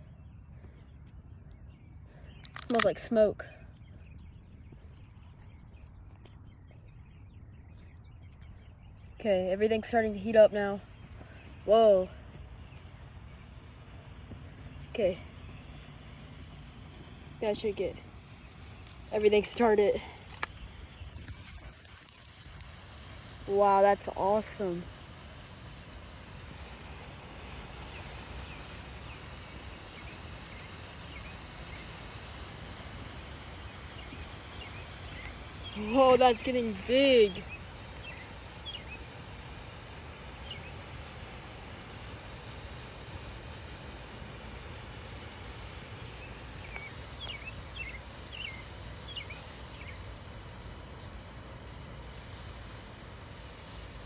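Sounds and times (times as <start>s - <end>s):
faint bird chirps: 0.0s - 25.1s, 27.8s - 39.7s, 45.3s - 51.2s
outdoor background noise: 0.0s - 54.0s.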